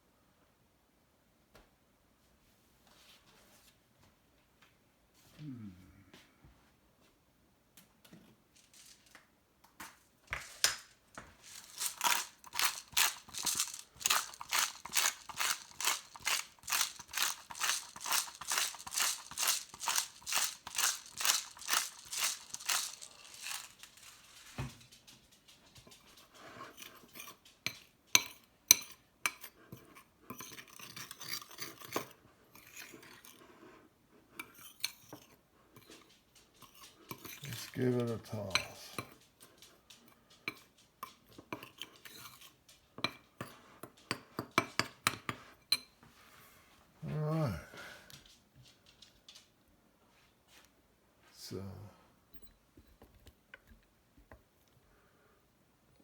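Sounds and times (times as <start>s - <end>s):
crunchy grinding strokes: 11.4s - 24.6s
clicks and clinks: 11.4s - 24.8s.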